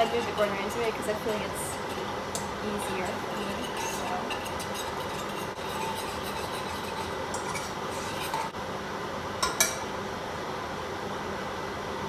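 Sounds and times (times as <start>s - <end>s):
utensil scraping a pot: 0.0s - 8.6s.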